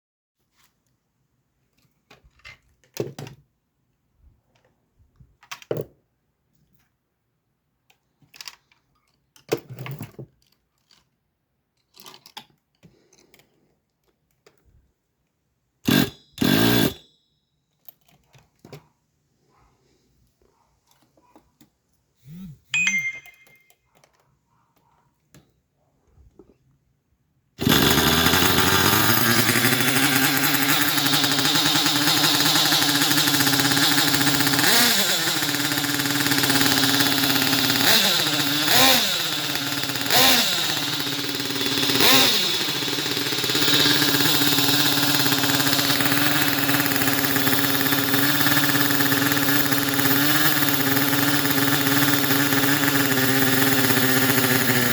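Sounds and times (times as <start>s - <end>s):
small model engine buzzing idle: 15.9s - 17.0s, 22.2s - 22.6s, 27.6s - 54.9s.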